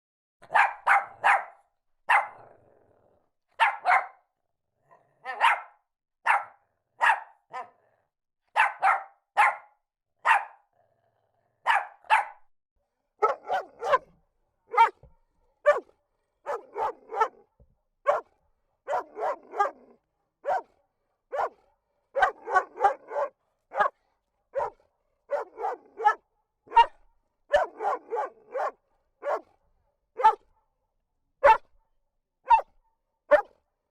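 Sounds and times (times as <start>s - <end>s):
dogs barking: 0.4s - 2.5s, 3.6s - 4.2s, 5.2s - 7.9s, 8.5s - 10.7s, 11.6s - 12.5s, 13.2s - 17.5s, 18.1s - 29.6s, 30.2s - 30.4s, 31.4s - 31.7s, 32.5s - 32.7s, 33.3s - 33.5s.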